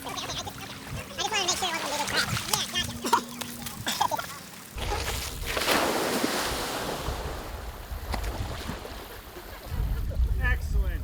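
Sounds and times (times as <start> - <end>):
wind buffeting microphone: 6.5 - 11.0.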